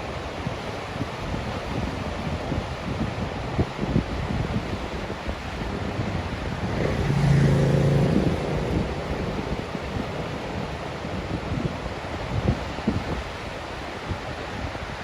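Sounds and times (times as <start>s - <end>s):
river rapid rushing: 0.0s - 15.0s
wind buffeting microphone: 0.0s - 15.0s
steady low tone: 5.5s - 12.4s.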